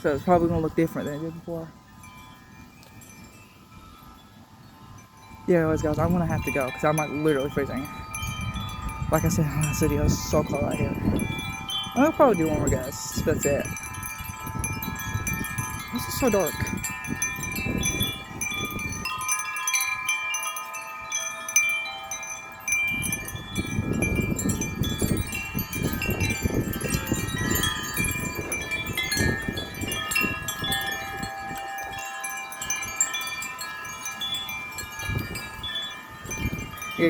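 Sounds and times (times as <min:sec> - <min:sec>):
wind buffeting microphone: 0:00.0 - 0:37.0
wind chimes ringing: 0:00.0 - 0:37.0.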